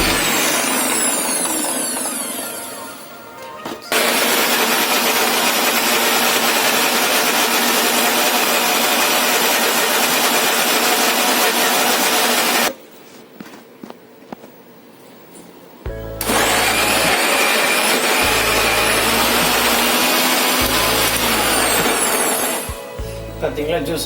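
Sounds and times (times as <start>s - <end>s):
mixer grinder whirring: 0.0s - 12.7s, 16.2s - 23.1s.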